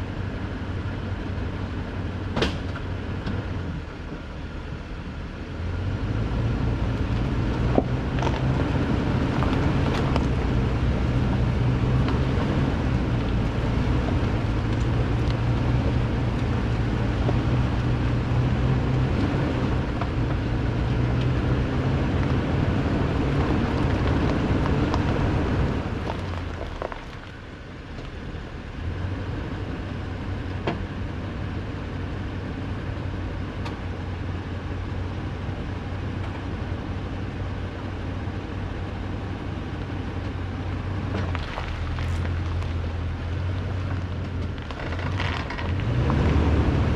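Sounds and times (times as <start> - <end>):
truck engine pulling at crawling speed: 0.0 - 46.9.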